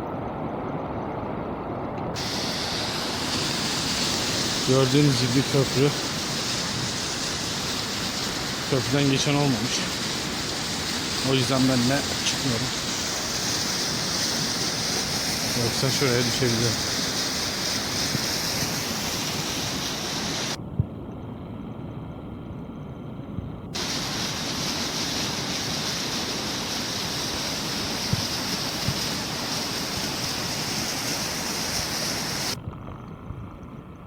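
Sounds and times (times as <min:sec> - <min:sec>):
mountain stream rushing: 0:02.2 - 0:20.6, 0:23.8 - 0:32.6.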